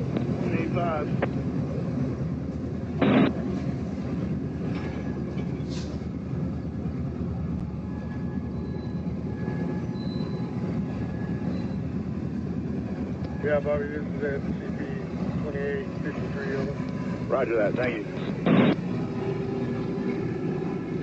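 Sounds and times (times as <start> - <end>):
train rumbling on track: 0.0 - 21.0
loud burst of noise: 3.0 - 3.4, 18.4 - 18.8.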